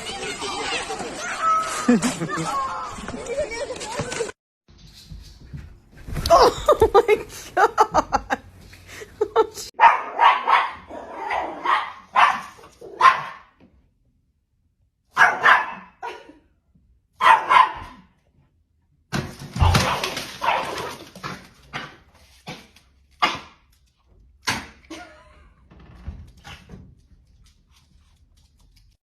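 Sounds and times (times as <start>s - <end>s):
dog barking: 9.8s - 13.5s, 15.1s - 16.1s, 17.2s - 18.1s.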